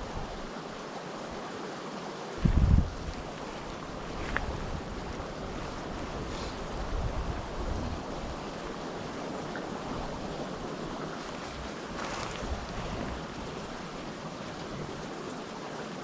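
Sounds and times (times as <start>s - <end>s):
wind buffeting microphone: 2.4s - 15.1s.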